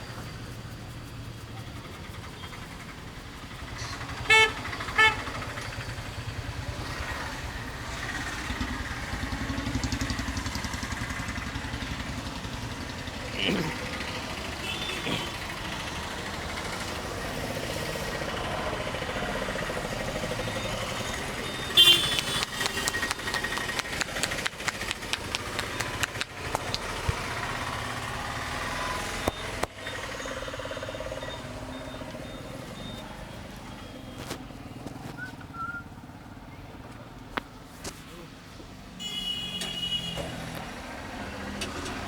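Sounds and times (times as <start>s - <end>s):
motorcycle engines running: 0.0s - 42.0s
street traffic: 0.0s - 42.0s
rapid irregular taps and slaps: 21.8s - 27.4s.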